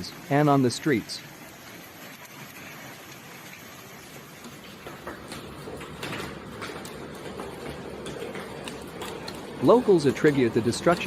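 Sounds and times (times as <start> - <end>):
heavy rain hiss: 0.0 - 5.8, 9.6 - 11.0.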